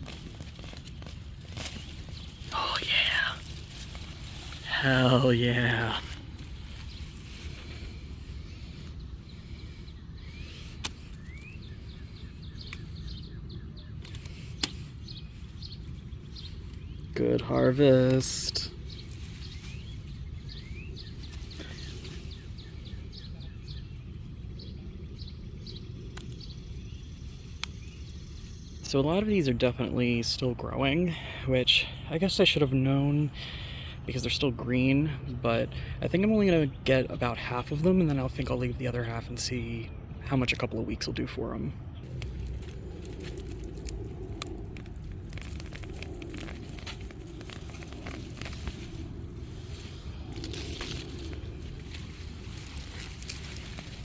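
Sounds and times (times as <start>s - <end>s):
plants and soil rustling: 0.0s - 24.0s, 27.2s - 54.0s
steady low rumble: 0.0s - 54.0s
small bird chirping: 0.2s - 28.9s.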